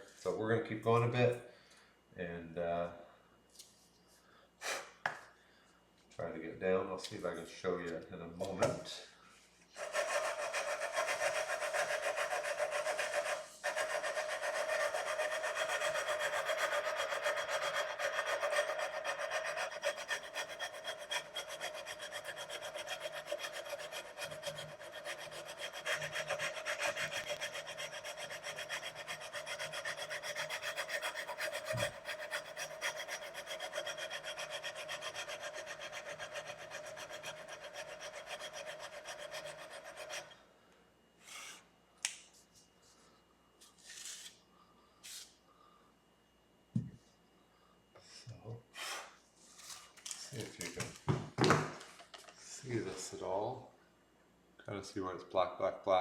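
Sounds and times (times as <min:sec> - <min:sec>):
sandpaper scraping metal frets: 0:09.8 - 0:40.3.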